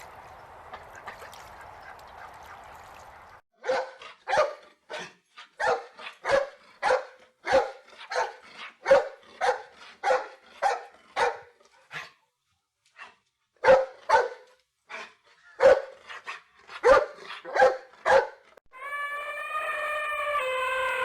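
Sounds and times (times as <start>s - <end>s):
dog barking: 3.6s - 12.1s, 13.6s - 18.4s
long steady pitched tone: 18.7s - 21.0s.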